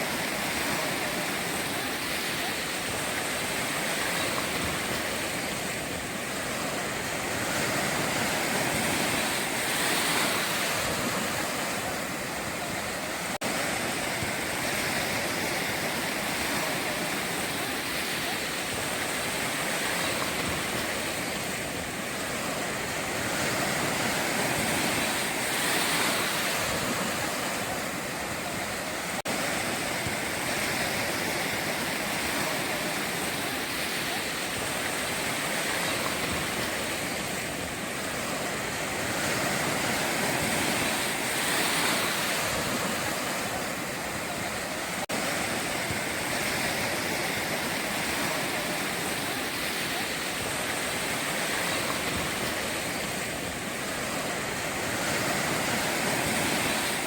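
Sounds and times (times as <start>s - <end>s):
ocean waves breaking on a beach: 0.0s - 57.0s.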